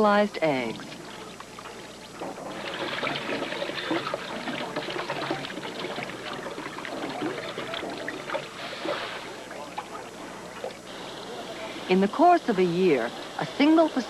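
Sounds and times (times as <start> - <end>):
water running and trickling: 0.0 - 10.9.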